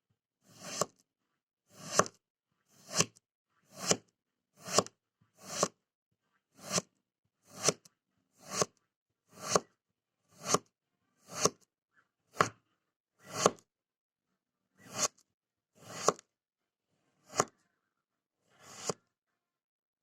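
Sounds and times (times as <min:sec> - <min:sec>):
knife slicing through sand: 0:02.7 - 0:04.0, 0:04.6 - 0:05.8, 0:09.3 - 0:09.7, 0:18.6 - 0:19.0.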